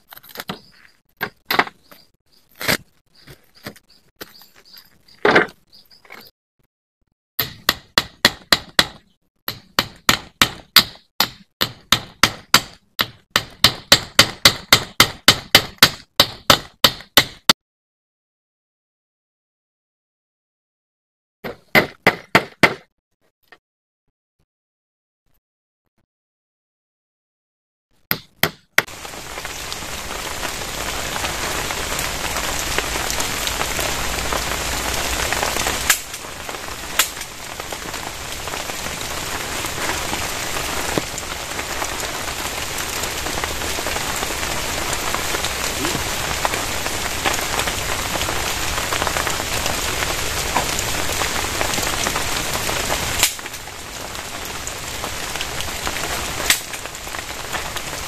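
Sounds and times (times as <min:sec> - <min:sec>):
heavy rain pouring: 0:28.9 - 0:58.0.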